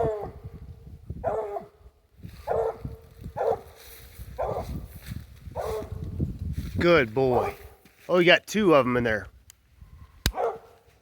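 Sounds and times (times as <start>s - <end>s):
dog barking: 0.0s - 0.4s, 1.2s - 1.8s, 2.4s - 3.8s, 4.4s - 4.8s, 5.6s - 6.0s, 7.3s - 7.8s, 10.3s - 10.9s.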